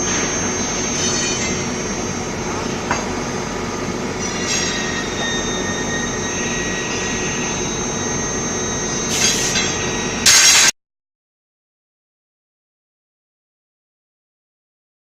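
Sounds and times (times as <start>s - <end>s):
high-pitched whines: 0.0s - 10.7s
machinery running: 0.0s - 10.7s.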